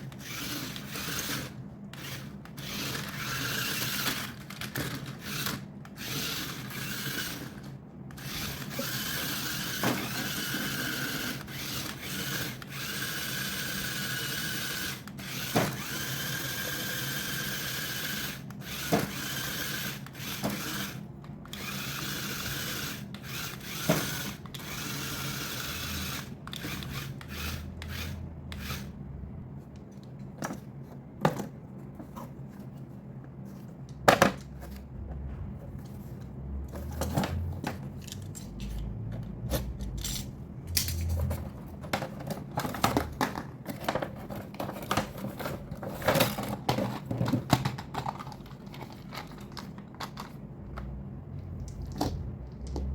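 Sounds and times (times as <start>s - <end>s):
small electric motor whirring: 0.0s - 28.9s.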